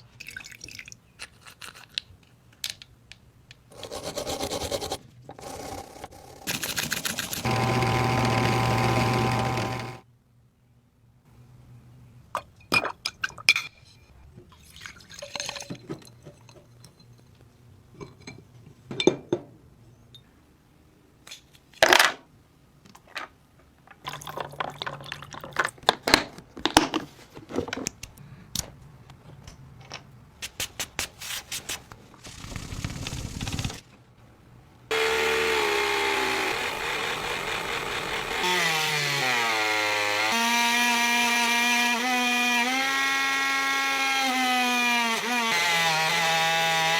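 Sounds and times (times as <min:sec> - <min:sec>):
electric power tool running: 0:06.5 - 0:10.0, 0:34.9 - 0:46.9.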